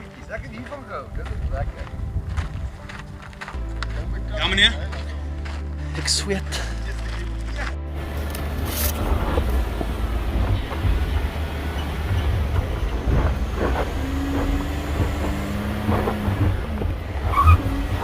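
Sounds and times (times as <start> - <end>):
off-road vehicle rumble: 6.7 - 18.0
vehicle body knocks and rattles: 9.2 - 17.0.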